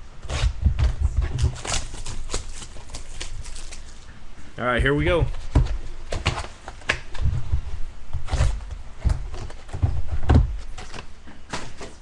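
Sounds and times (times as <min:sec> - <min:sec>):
card pack rustling and clicking: 0:01.4 - 0:04.1.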